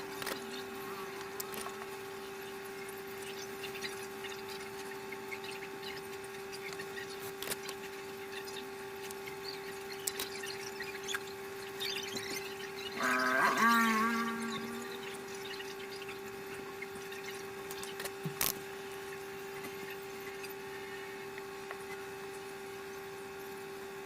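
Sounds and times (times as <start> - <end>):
steady hum: 0.0 - 24.0
wavering pitched sound: 11.8 - 17.5.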